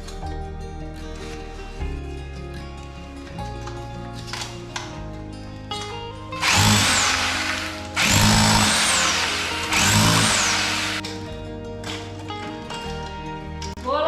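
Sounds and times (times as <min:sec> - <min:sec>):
background music: 0:00.0 - 0:14.0
power drill whining: 0:06.4 - 0:11.1.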